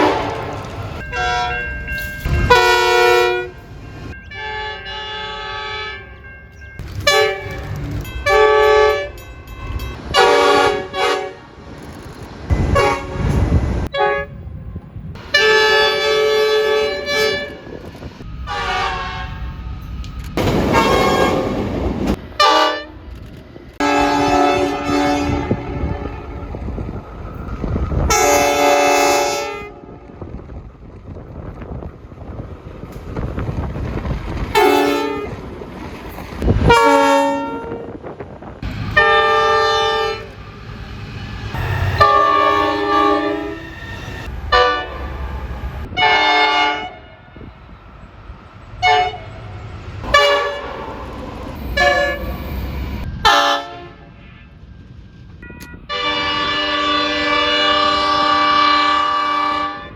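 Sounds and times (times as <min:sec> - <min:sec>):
train horn blasts: 0:00.0 - 0:03.7, 0:04.3 - 0:06.2, 0:07.0 - 0:11.5, 0:12.5 - 0:14.5, 0:15.2 - 0:17.8, 0:18.4 - 0:19.6, 0:20.4 - 0:23.1, 0:23.8 - 0:26.6, 0:28.0 - 0:30.1, 0:34.5 - 0:35.4, 0:36.4 - 0:38.1, 0:38.9 - 0:40.4, 0:41.6 - 0:47.5, 0:48.8 - 0:49.4, 0:50.0 - 0:51.0, 0:51.8 - 0:52.4, 0:53.0 - 0:54.6, 0:55.4 - 0:59.9
low rumble of trains moving: 0:00.0 - 0:59.9.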